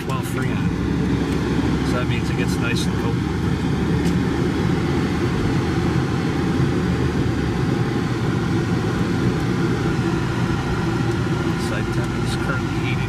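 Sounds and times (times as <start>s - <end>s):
air-conditioning blower running: 0.0s - 13.0s
road and engine noise: 0.0s - 13.0s.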